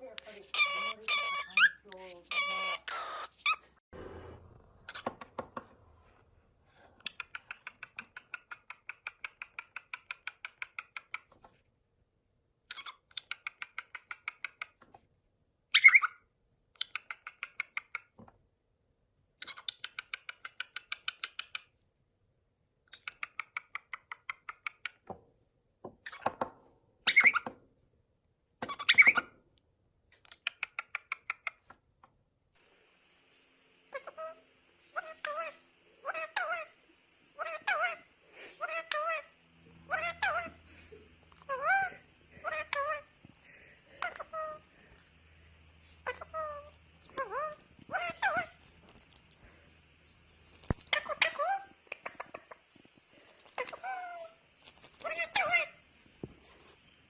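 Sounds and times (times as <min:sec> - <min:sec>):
parrot squawks: 0:00.4 - 0:03.6, 0:33.9 - 0:36.8, 0:39.9 - 0:40.6
parrot clicking calls: 0:07.0 - 0:11.3, 0:19.4 - 0:21.7, 0:50.9 - 0:52.6.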